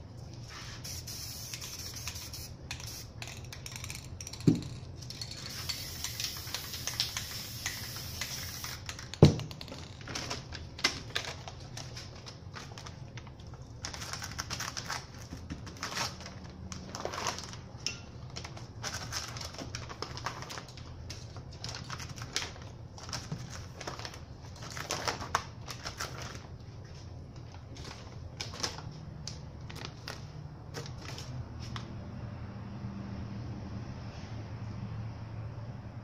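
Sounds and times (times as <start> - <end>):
spray-paint cans hissing: 0.5 - 3.5, 5.2 - 8.9.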